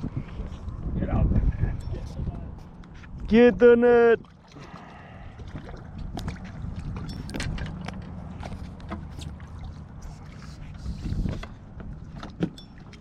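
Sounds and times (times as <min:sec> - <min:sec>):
boat motor humming: 0:02.4 - 0:13.0.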